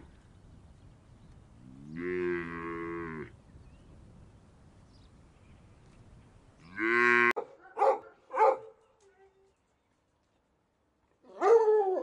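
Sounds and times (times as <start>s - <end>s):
cow mooing: 1.7s - 3.3s.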